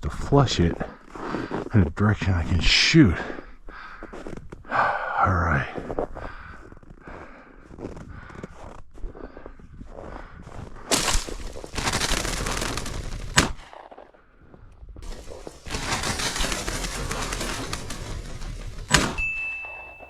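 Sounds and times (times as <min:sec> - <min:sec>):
steady high beep: 0:19.2 - 0:20.0.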